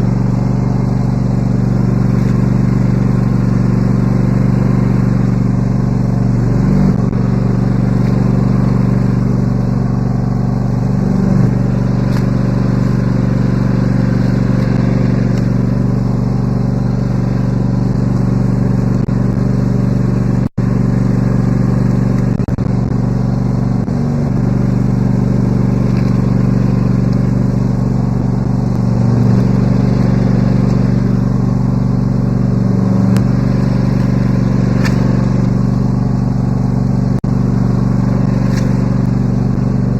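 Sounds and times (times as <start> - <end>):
riding lawn mower engine running: 0.0 - 39.9.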